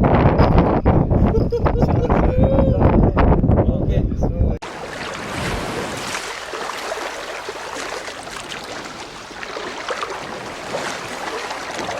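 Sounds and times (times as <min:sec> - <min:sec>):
seawater washing at the shore: 0:04.6 - 0:11.9.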